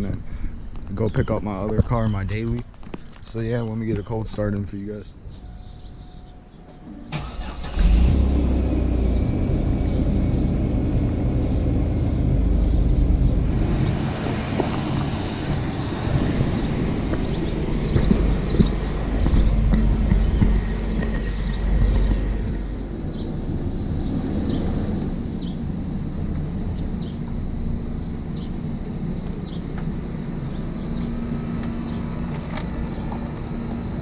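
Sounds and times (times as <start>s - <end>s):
car engine running: 7.2s - 34.0s.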